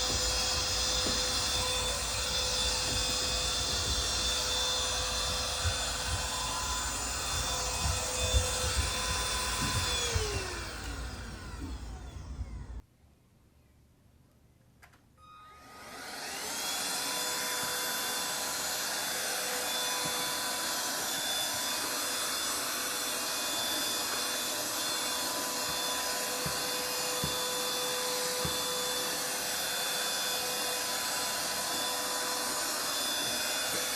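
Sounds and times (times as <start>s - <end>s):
handheld vacuum motor whining: 0.0s - 12.8s, 15.2s - 33.9s.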